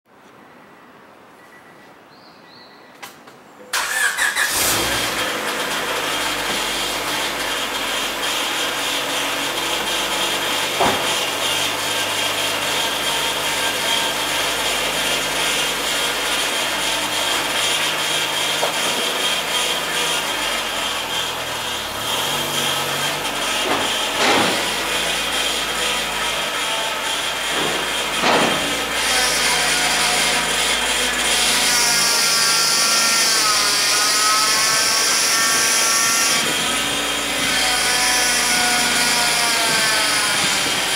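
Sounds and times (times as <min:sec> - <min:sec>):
car engine starting and running: 0:03.8 - 0:13.6, 0:15.1 - 0:29.0.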